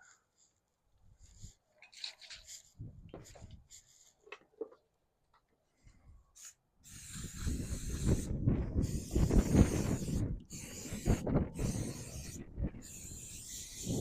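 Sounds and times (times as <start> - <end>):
spray can hissing: 6.4 - 14.0.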